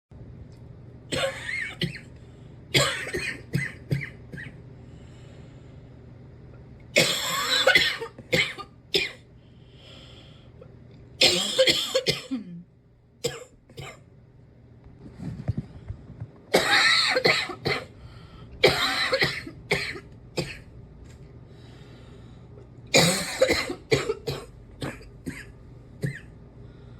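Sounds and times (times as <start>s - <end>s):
person coughing: 1.1s - 2.1s, 2.8s - 4.6s, 7.0s - 9.2s, 11.2s - 14.0s, 16.5s - 17.9s, 18.6s - 20.6s, 22.9s - 26.3s.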